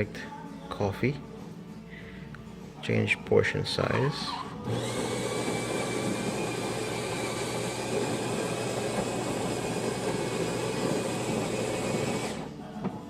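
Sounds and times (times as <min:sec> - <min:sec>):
coffee grinder grinding beans: 0:04.6 - 0:12.5.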